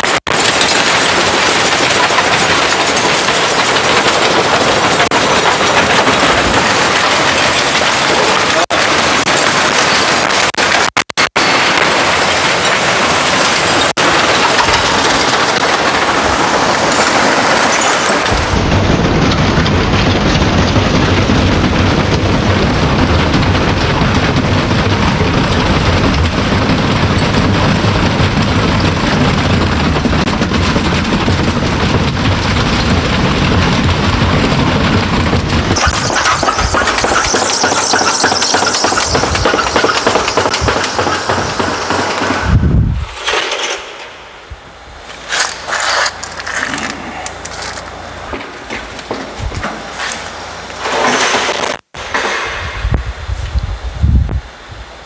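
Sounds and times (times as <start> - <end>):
washing machine rattling in spin: 0.4 - 9.7, 12.0 - 18.6, 21.6 - 43.8.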